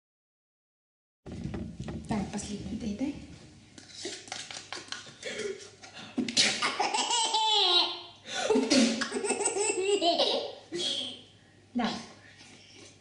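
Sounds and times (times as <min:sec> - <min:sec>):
baby laughing: 0:06.5 - 0:08.1, 0:08.7 - 0:11.2.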